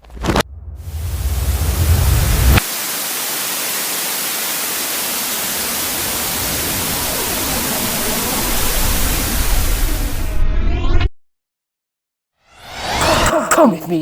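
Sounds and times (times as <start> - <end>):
low rumble: 0.1 - 2.6
static hiss: 1.6 - 9.6.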